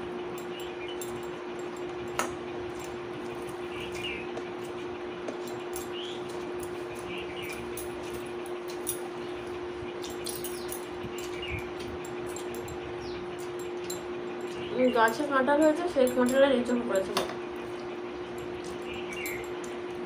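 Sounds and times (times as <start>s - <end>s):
steady hum: 0.0s - 20.0s
clicks and clinks against plate: 10.0s - 20.0s.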